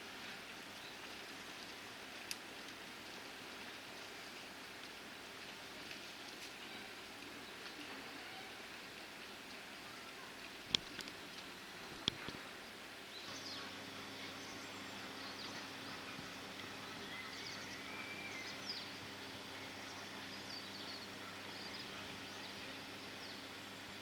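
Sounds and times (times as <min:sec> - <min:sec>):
low steady hum: 0:00.0 - 0:24.0
outdoor background noise: 0:00.0 - 0:24.0
small birds chirping: 0:00.3 - 0:02.8, 0:09.6 - 0:24.0.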